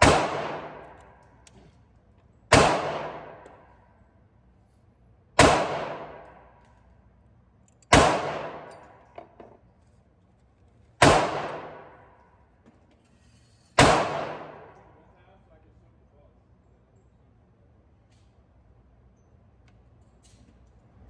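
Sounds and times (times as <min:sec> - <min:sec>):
pistol shots with echo: 0:00.0 - 0:01.2, 0:02.5 - 0:03.7, 0:05.4 - 0:06.6, 0:07.9 - 0:09.0, 0:11.0 - 0:12.1, 0:13.8 - 0:14.9.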